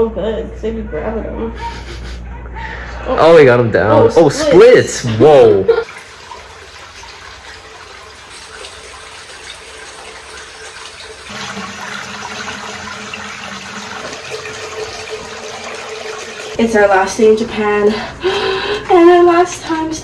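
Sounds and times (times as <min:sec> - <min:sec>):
water pouring into tub: 0:05.3 - 0:17.3.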